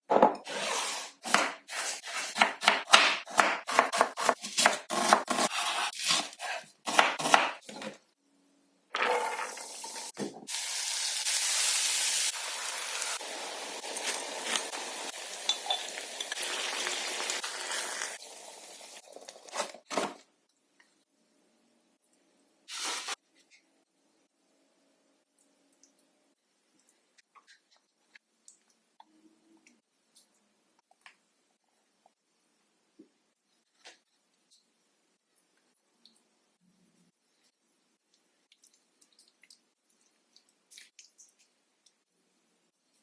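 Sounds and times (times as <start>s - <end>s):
knife chopping on cutting board: 1.2s - 7.9s
food sizzling in oil: 9.2s - 19.4s.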